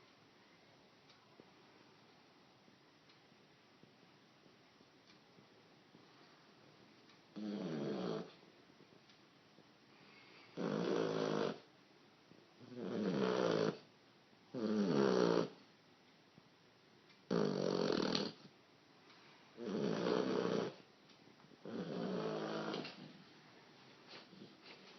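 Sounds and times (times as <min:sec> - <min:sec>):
dog snoring: 0:07.3 - 0:08.4, 0:10.5 - 0:11.7, 0:12.6 - 0:13.9, 0:14.5 - 0:15.6, 0:17.3 - 0:18.5, 0:19.6 - 0:20.8, 0:21.6 - 0:23.1.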